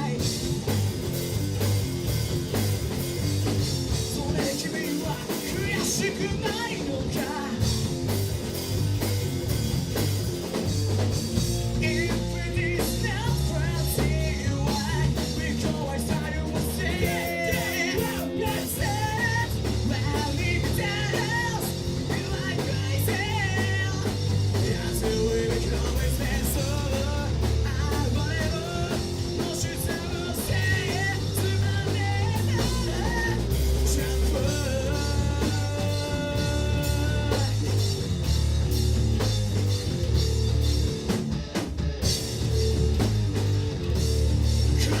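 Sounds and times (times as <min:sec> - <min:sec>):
person singing: 0:00.0 - 0:00.4, 0:04.1 - 0:07.8, 0:11.7 - 0:37.8
bass and electric guitars: 0:00.0 - 0:45.0
drum kit: 0:00.0 - 0:45.0.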